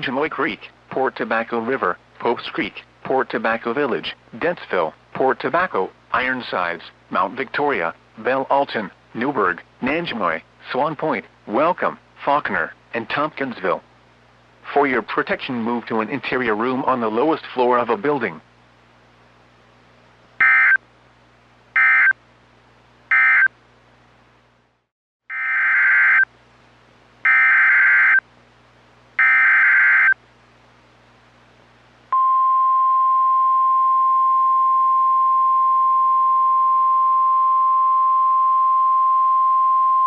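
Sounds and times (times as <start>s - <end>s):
steady alarm tone: 20.4s - 20.8s, 21.8s - 22.1s, 23.1s - 23.5s, 25.3s - 26.2s, 27.3s - 28.2s, 29.2s - 30.2s.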